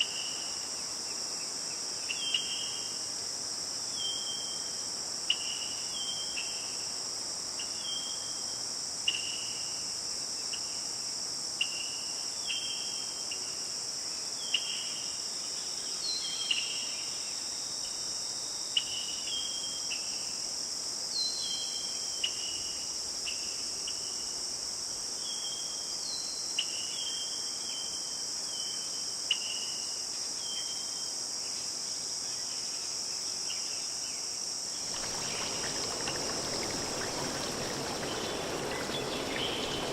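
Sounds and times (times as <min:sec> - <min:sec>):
insects chirring: 0:34.6 - 0:39.9.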